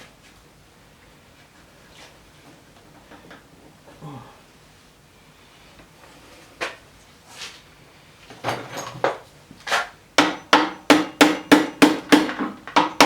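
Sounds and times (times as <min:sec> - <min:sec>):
tool tapping on metal: 0:10.2 - 0:13.0.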